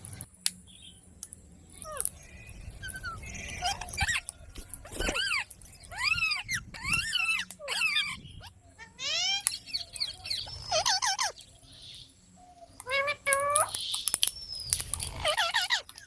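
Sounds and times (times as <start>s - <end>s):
parrot squawking: 4.9s - 11.4s, 12.8s - 13.8s, 15.1s - 16.0s.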